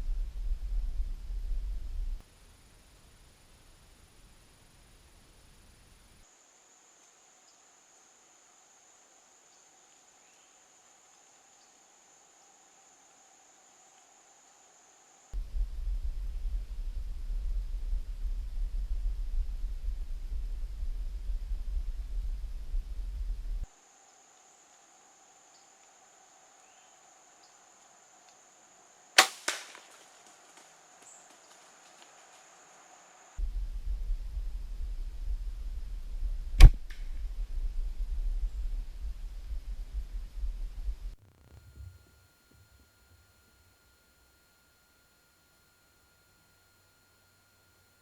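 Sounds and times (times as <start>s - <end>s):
low rumble: 0.0s - 2.2s, 15.4s - 23.7s, 33.4s - 42.0s
arrow striking target: 29.2s - 30.0s, 36.6s - 37.2s
bowstring snap: 29.2s - 30.4s, 36.6s - 37.3s.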